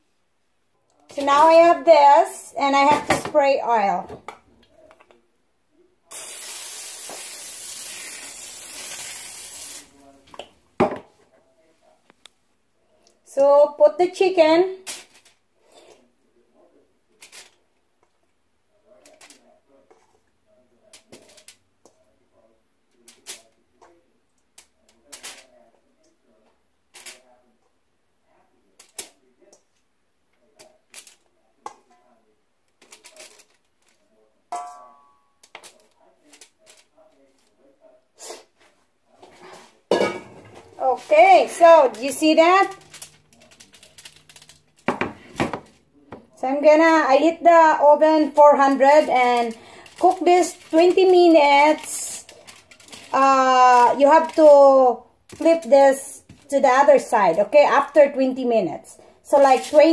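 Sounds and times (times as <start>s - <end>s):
aerosol spray hissing: 6.1s - 9.9s
ringing metallic clang: 34.6s - 35.3s.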